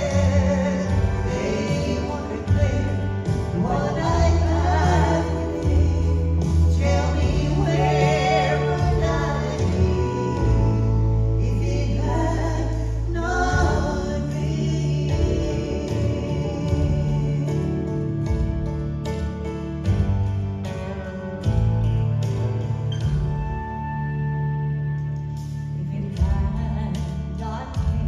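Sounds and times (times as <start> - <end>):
women singing with vibrato: 0.0 - 18.2, 25.8 - 28.0
instrumental accompaniment: 0.0 - 28.0
steady bass notes: 0.0 - 28.0.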